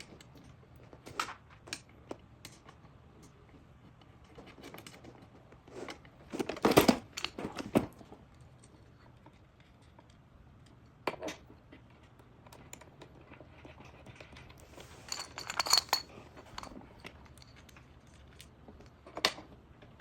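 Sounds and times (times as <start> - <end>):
metal clatter with ring: 14.6 - 17.9
metal parts clicking and knocking: 14.8 - 19.4.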